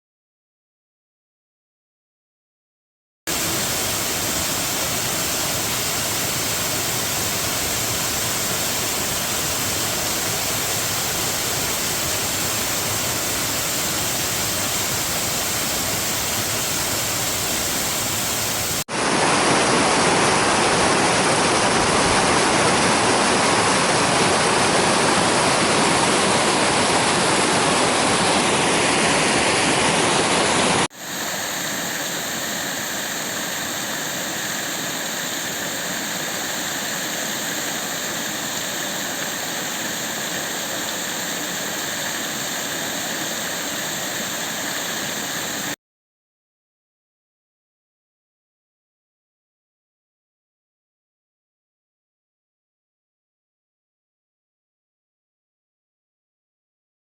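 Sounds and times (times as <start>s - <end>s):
heavy rain hissing: 3.3s - 45.8s.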